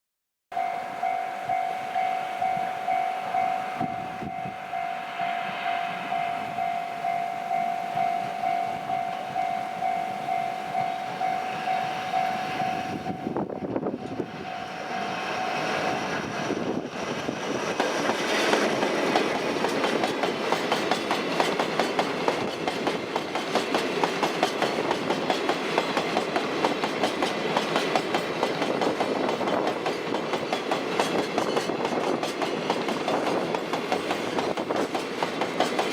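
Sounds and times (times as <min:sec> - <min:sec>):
pulsing warning tone: 0:00.6 - 0:16.1
train wheels clattering over rail joints: 0:16.1 - 0:35.9.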